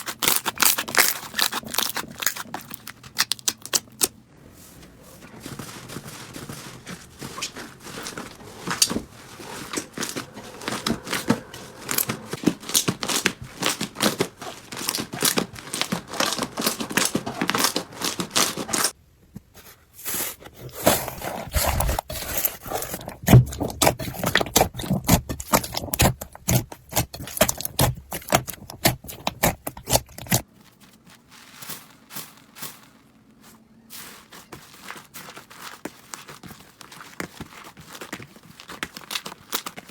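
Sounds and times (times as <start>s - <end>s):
slime crackling and popping: 34.8s - 39.9s.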